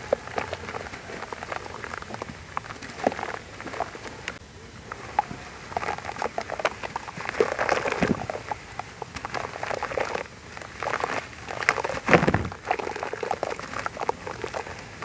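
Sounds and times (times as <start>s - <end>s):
wet sand crunching and crackling: 0.0s - 15.0s
heavy thud: 12.1s - 12.6s.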